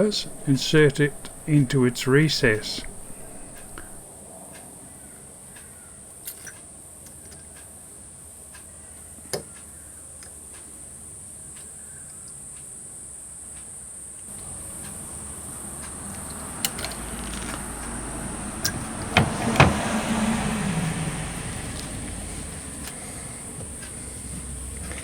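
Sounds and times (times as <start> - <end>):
handling noise: 0.0 - 4.0, 18.6 - 20.0
steady high hiss: 0.0 - 4.1.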